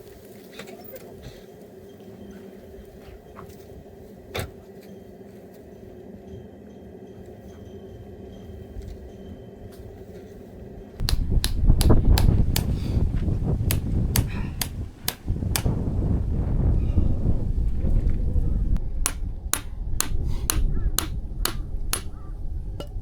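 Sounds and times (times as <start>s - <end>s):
steady low hum: 5.4s - 23.0s
hammer blows on metal: 11.0s - 16.0s, 19.0s - 23.0s
low rumble: 11.0s - 23.0s.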